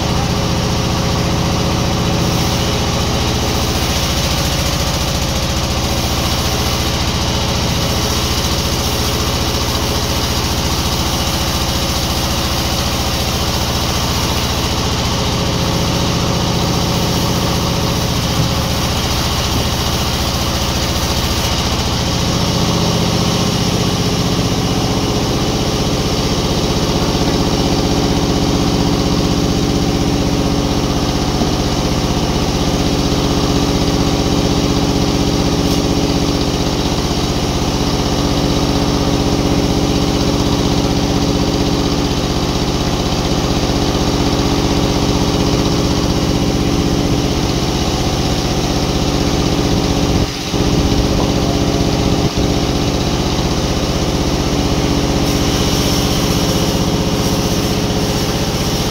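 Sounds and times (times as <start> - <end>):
sawmill machinery running: 0.0 - 58.9.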